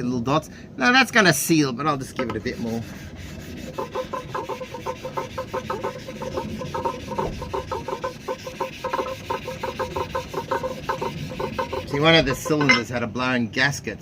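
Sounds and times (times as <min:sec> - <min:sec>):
metal rubbing on wet sandpaper: 0:02.0 - 0:12.9.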